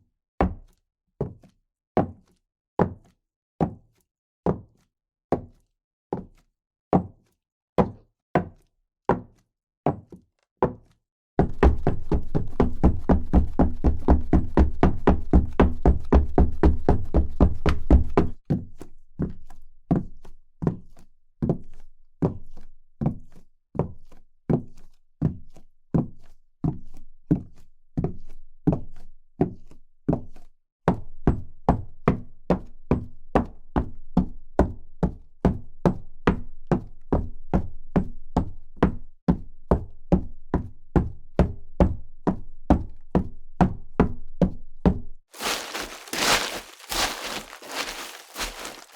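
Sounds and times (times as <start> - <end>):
footsteps on hard floor: 45.4 - 48.9.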